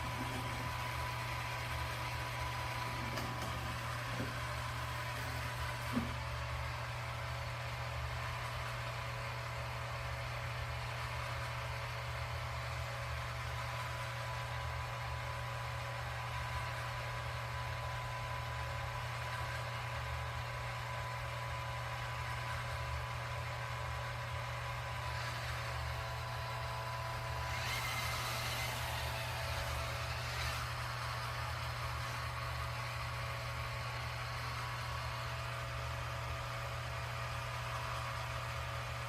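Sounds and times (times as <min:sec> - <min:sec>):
robot vacuum running: 0:00.0 - 0:07.0, 0:20.9 - 0:38.6.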